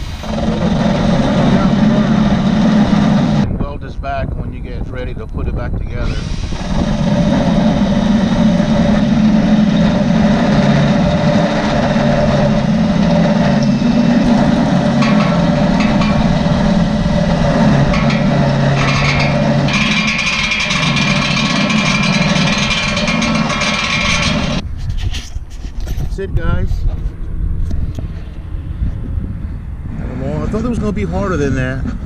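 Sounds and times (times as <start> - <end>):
harsh high grinding: 0.0 - 3.5, 5.8 - 24.6
power tool cutting metal: 0.0 - 3.5, 6.0 - 24.6.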